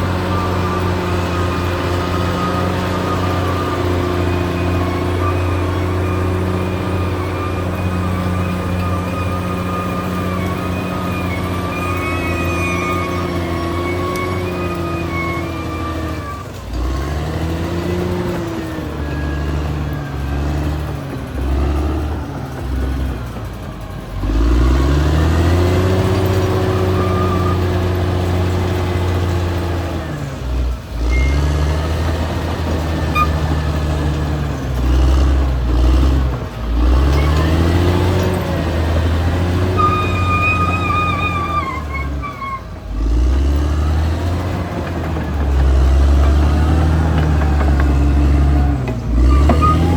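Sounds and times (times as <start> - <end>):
high wavering squeal: 0.0 - 16.5, 33.1 - 33.4, 39.6 - 42.8, 47.9 - 49.9
bulldozer engine under load: 0.0 - 49.9.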